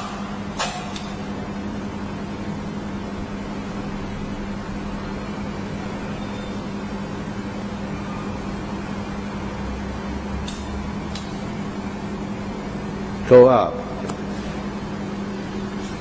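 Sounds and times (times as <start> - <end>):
electrical hum and fan noise: 0.0 - 16.0
sharp click: 0.6 - 1.2, 10.4 - 11.3.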